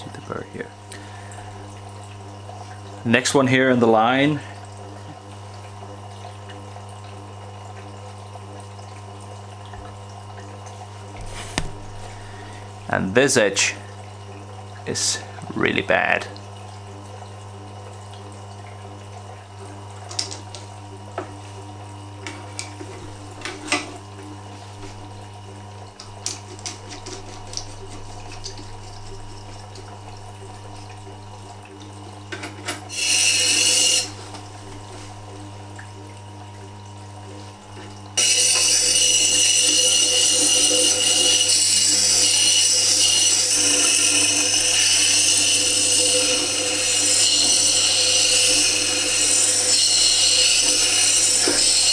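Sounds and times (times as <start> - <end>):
sharpening machine motor humming: 11.2 - 12.9, 26.3 - 31.5, 32.8 - 35.4, 38.2 - 51.9
chisel grinding on wheel: 26.3 - 29.7, 32.9 - 34.4, 38.2 - 51.9.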